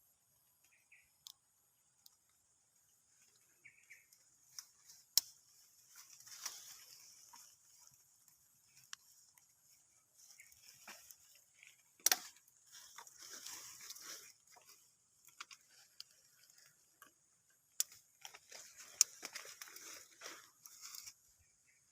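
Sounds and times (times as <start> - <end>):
foliage rustling and crunching: 3.1 - 21.8
goat eating leaves: 4.4 - 21.4
sharp snaps: 12.0 - 12.4.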